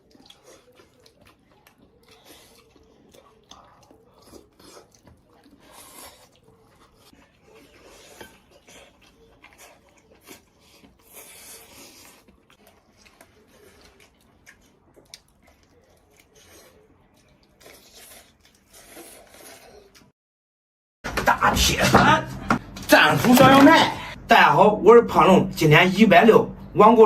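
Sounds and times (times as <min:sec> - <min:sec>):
person chewing: 0:00.0 - 0:20.1.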